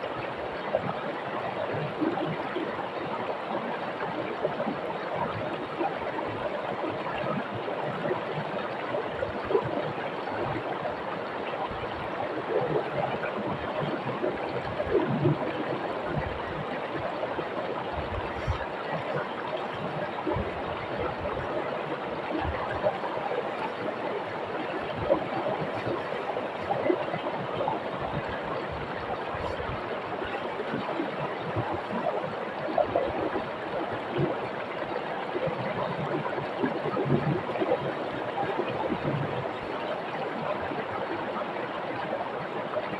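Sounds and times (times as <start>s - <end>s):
small water splashes: 7.3s - 34.4s
river water rushing over stones: 10.5s - 37.7s.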